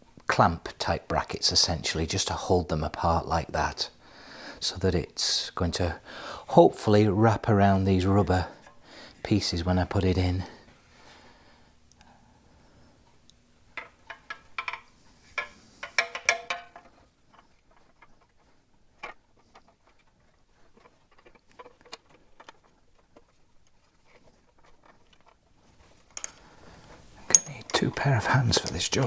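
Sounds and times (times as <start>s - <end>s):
metal brackets clicking and scraping: 13.8s - 18.2s, 26.1s - 29.0s.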